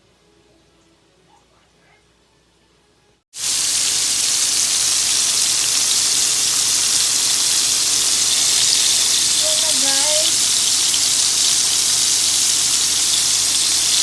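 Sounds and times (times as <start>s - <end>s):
scallops sizzling in oil: 3.4s - 14.0s.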